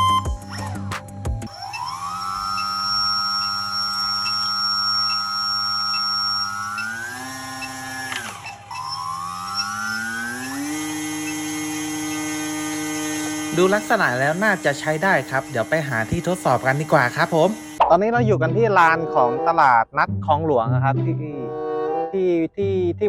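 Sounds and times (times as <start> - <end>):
electric motor propeller whine: 0.0 - 17.8.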